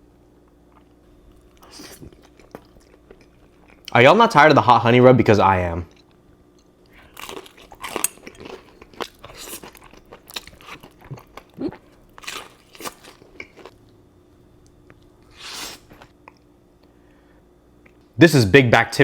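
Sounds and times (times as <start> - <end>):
crunchy food chewing: 0.4 - 4.0, 5.9 - 14.0.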